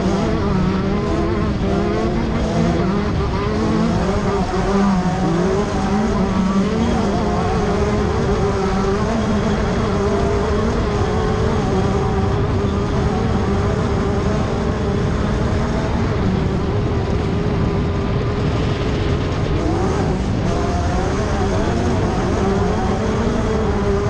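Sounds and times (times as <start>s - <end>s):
constant rushing noise: 0.0s - 24.0s
race car engine at high revs: 0.0s - 24.0s.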